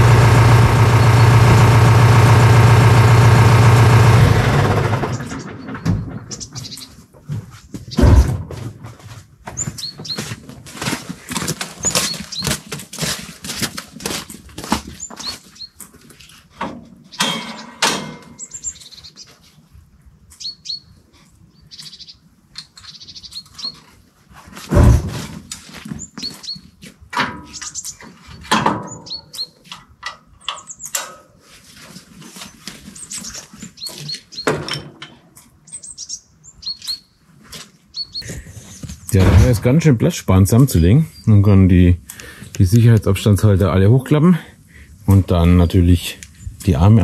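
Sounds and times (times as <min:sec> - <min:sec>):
heavy thunk: 0:08.0 - 0:08.7, 0:24.7 - 0:25.3, 0:39.2 - 0:39.7.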